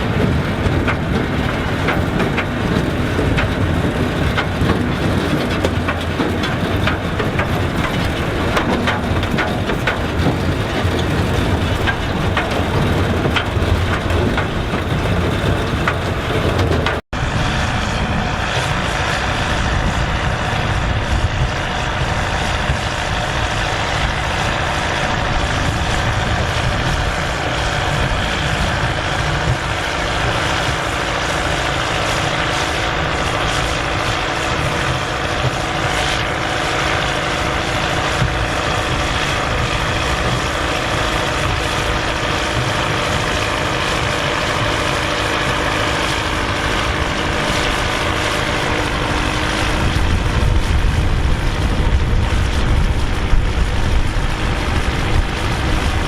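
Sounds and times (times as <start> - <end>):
harvest machinery clattering: 0.0 - 17.0, 20.6 - 56.0
tractor diesel engine running: 0.0 - 56.0.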